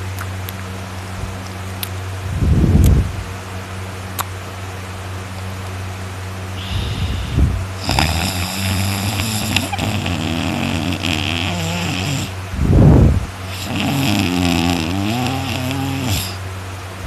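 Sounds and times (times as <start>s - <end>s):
noisy breath: 6.5s - 16.4s
person snoring: 6.6s - 12.4s, 13.4s - 16.4s.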